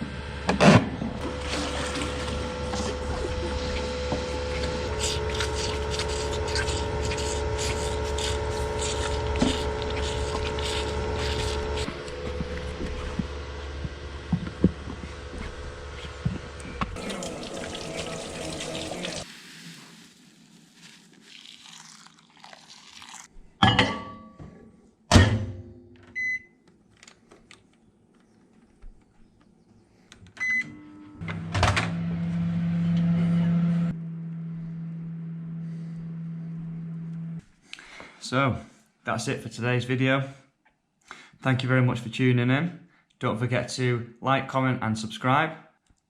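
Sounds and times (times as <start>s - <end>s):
vehicle engine running: 32.0s - 37.4s.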